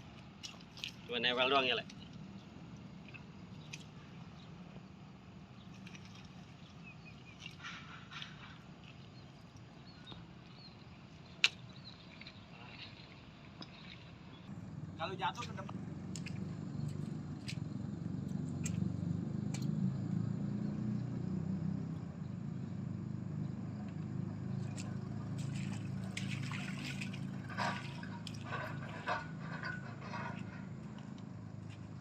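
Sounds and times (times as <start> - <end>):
heavy machine engine rumbling: 27.2 - 32.0.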